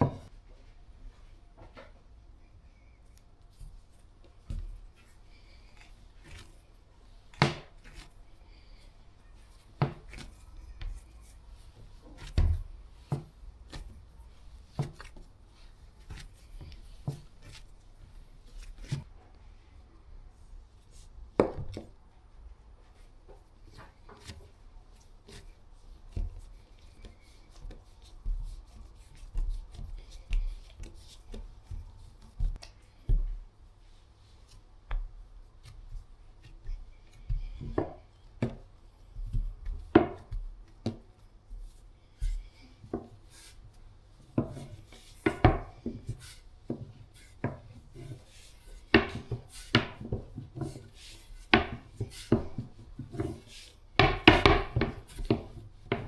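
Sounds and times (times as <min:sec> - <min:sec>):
utensils knocking on wooden board: 0:54.0 - 0:56.0.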